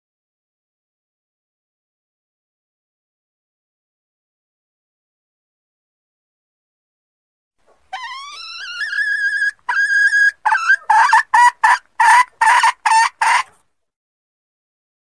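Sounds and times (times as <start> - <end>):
hen junglefowl calling and clucking: 7.7 - 13.6.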